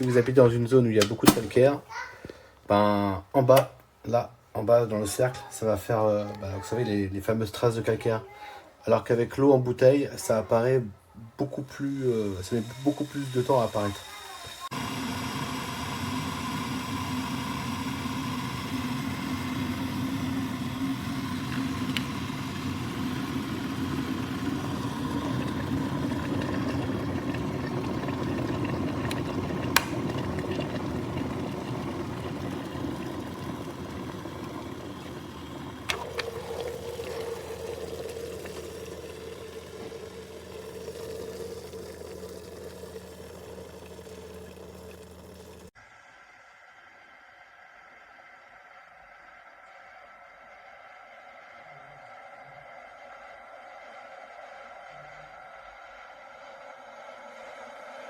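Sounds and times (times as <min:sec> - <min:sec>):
electric kettle heating water: 0:00.0 - 0:01.8, 0:09.0 - 0:58.0
kettle switch click: 0:01.0 - 0:01.6, 0:29.1 - 0:30.1
faint hum: 0:04.0 - 0:58.0.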